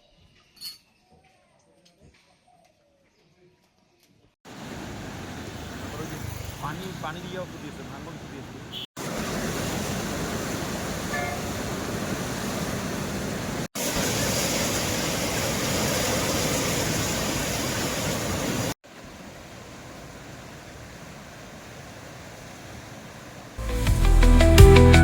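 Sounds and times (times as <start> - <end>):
steady rushing outdoor noise: 4.5 - 23.6.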